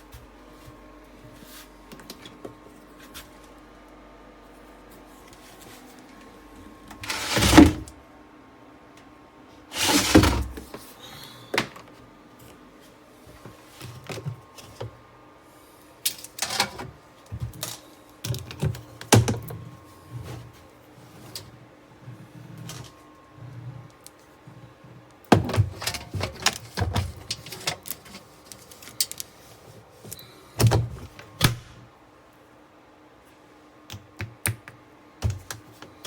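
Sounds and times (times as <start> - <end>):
washing machine motor hum: 0.0 - 10.9
washing machine noisy surges: 5.7 - 8.4, 9.6 - 10.8.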